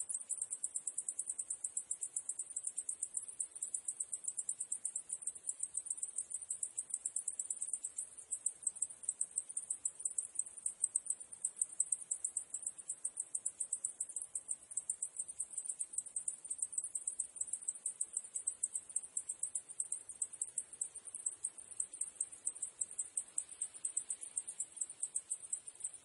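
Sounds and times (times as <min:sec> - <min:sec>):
cicadas chirring: 0:00.0 - 0:26.0.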